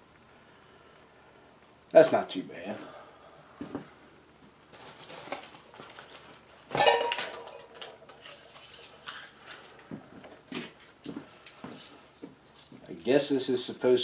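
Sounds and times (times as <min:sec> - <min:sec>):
rustling: 0:04.7 - 0:09.9.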